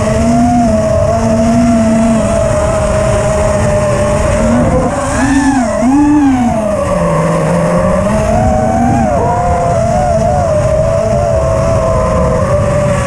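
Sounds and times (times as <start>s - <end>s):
quadcopter motors whining: 0.0s - 13.0s
wind noise: 0.0s - 13.0s.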